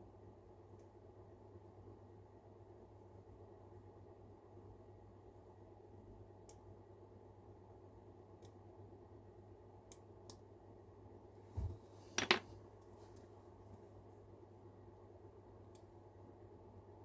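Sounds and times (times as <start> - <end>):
tools clattering on workbench: 11.6 - 12.5.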